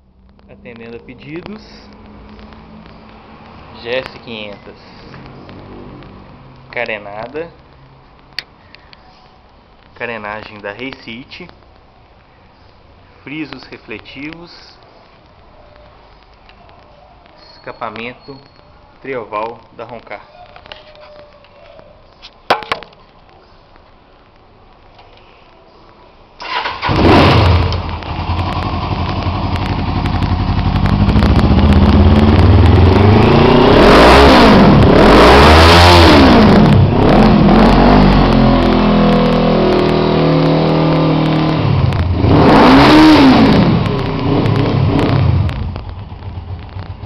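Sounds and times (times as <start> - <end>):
motorcycle engine starting and idling: 26.4 - 33.3, 43.0 - 47.0
motorcycle engine revving: 26.4 - 47.0.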